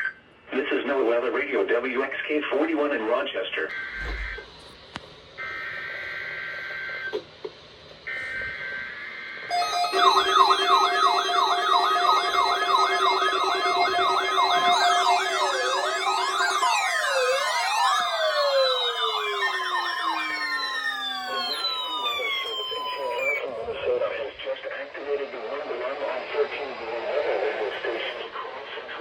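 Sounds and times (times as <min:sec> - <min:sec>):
alert data tones: 0:09.5 - 0:23.4
electronic siren yelps and wails: 0:09.5 - 0:23.4.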